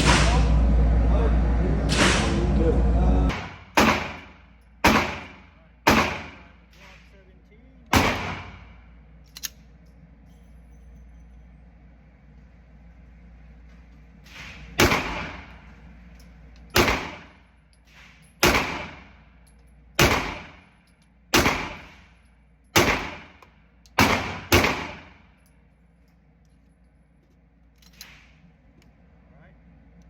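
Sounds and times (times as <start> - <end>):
pistol shots echoing: 3.3 - 6.6, 7.9 - 8.7, 14.6 - 15.6, 16.8 - 17.4, 18.4 - 19.1, 20.0 - 20.7, 21.3 - 22.0, 22.8 - 23.4, 24.0 - 25.2.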